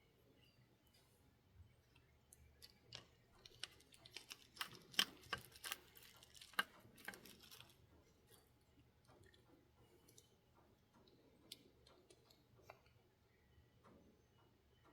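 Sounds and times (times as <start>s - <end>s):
small tools clicking on metal parts: 2.3s - 8.4s.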